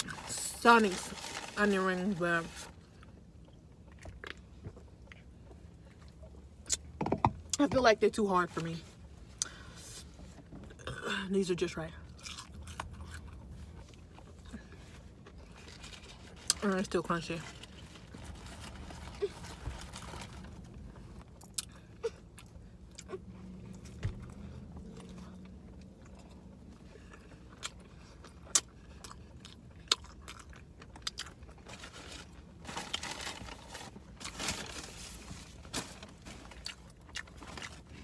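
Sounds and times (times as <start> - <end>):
person crunching onion ring: 12.2 - 13.5.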